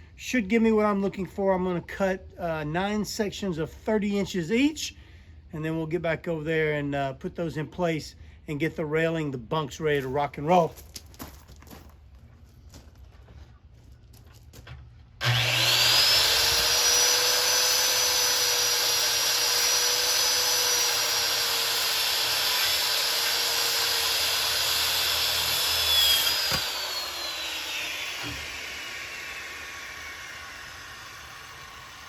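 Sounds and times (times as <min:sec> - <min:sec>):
electric saw cutting timber: 0:15.2 - 0:32.0
saw knock: 0:15.2 - 0:32.0.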